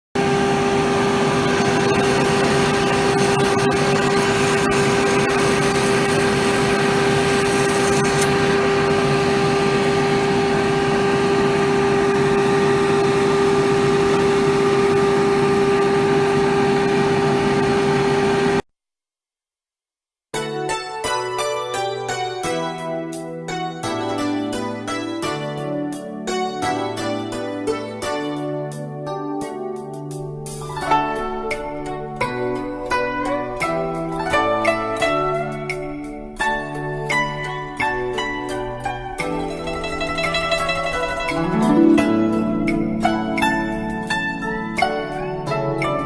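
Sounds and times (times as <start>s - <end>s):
milling machine motor humming: 0.2s - 18.6s.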